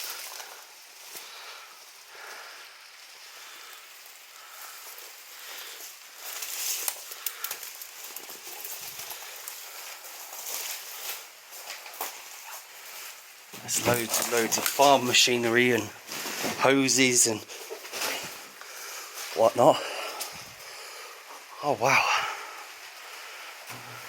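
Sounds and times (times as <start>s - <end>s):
footsteps through dry undergrowth: 4.4s - 21.5s.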